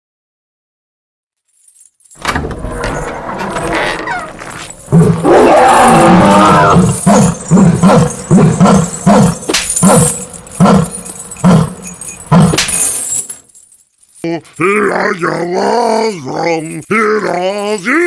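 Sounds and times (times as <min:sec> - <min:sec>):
loud wavering roar: 0:03.4 - 0:12.6.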